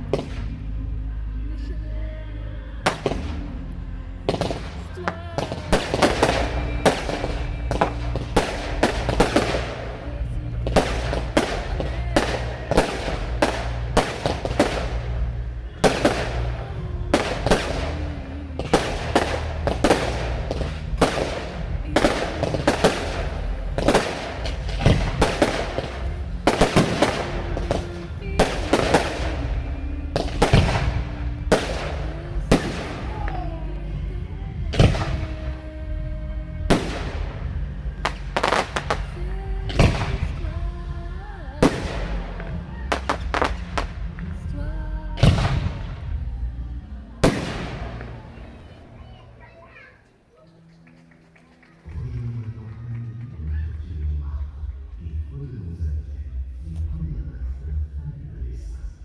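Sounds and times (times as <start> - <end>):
film music over loudspeakers: 0.0 - 59.0
fireworks bursting: 2.9 - 50.1.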